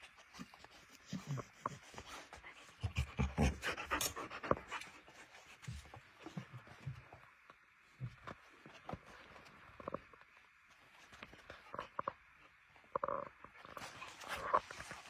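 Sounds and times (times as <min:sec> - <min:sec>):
puppy panting: 0:00.3 - 0:07.0.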